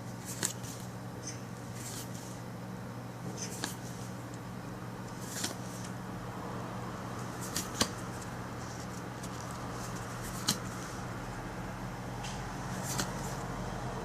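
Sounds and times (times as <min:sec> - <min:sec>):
steady low hum: 0:00.0 - 0:14.0
trading cards being flipped: 0:00.2 - 0:02.4, 0:03.3 - 0:04.2, 0:05.1 - 0:06.0, 0:07.3 - 0:11.0, 0:12.7 - 0:13.4.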